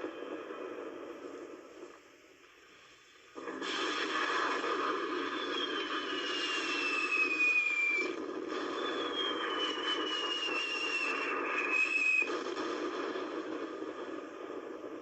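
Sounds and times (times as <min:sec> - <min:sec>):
rocket whistles falling in pitch: 0:03.8 - 0:12.3.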